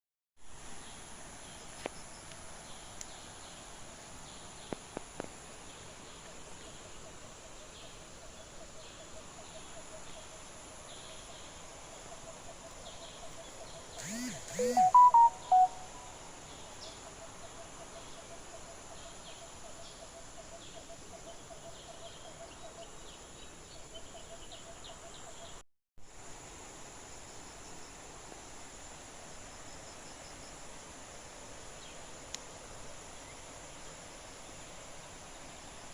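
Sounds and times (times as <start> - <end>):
birds chirping: 12.7 - 15.9
low insect trill: 13.9 - 16.2
short whistled notes: 14.0 - 15.9.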